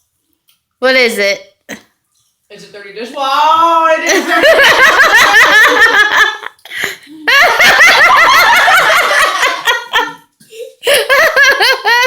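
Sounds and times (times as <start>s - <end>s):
loud laughter: 4.1s - 6.5s, 7.2s - 10.2s.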